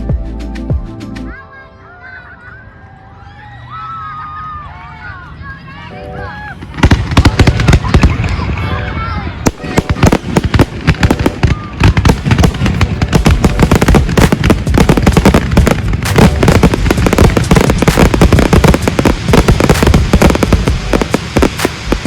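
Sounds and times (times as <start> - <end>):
fireworks bangs and crackles: 6.6 - 22.0
low rumble: 12.1 - 22.0.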